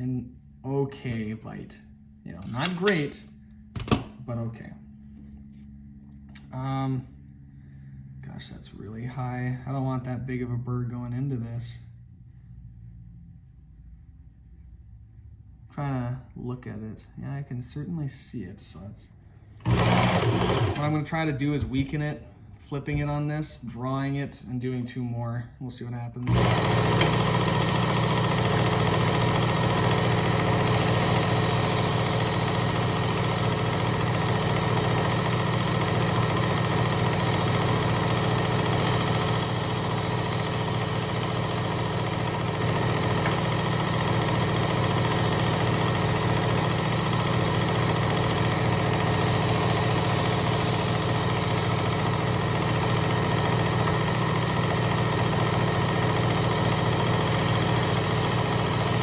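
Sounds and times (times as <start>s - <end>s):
belt sharpener running: 2.5s - 3.1s, 19.6s - 21.1s, 26.3s - 59.0s.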